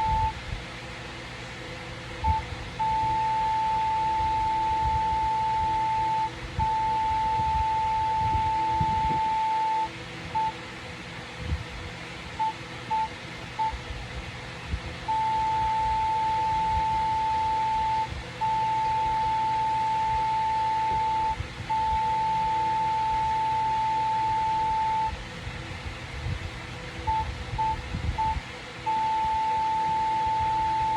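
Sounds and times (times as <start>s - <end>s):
morse code beeps: 0.0s - 0.3s, 2.2s - 10.6s, 12.4s - 13.8s, 15.1s - 25.1s, 27.1s - 30.9s
low background rumble: 0.0s - 30.9s.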